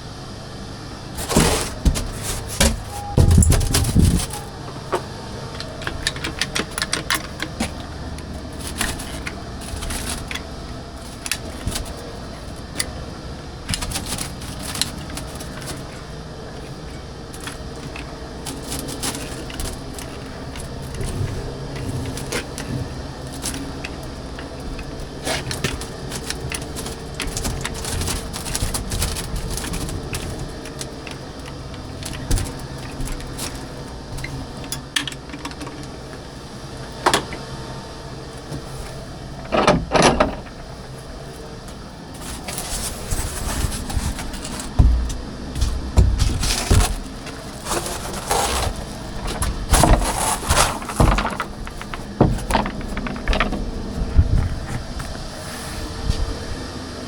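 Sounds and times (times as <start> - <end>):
steady low hum: 0.0 - 57.0
clicks taps and knocks: 44.2 - 47.4, 50.8 - 54.6.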